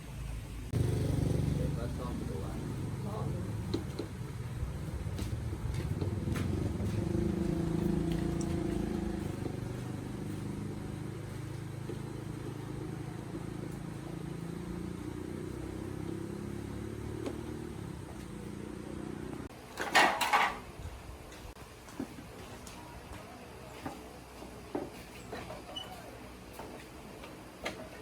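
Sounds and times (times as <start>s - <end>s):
small motorbike engine idling: 0.1s - 19.5s.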